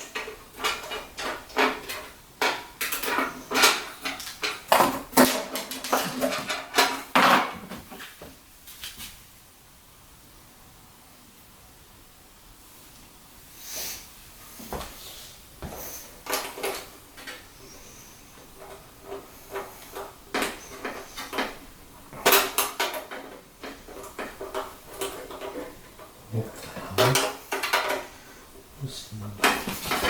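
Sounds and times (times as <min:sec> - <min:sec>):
clatter of small metal and plastic parts: 0:00.0 - 0:07.7, 0:18.6 - 0:21.6, 0:22.2 - 0:28.1, 0:29.4 - 0:30.0.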